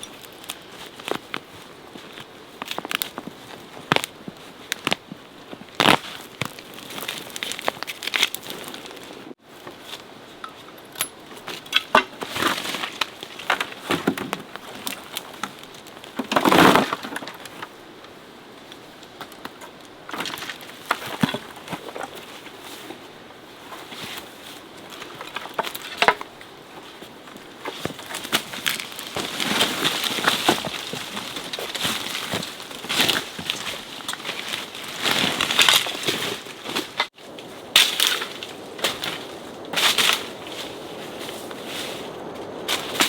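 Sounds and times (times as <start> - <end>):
rustling scrape: 26.8 - 43.0.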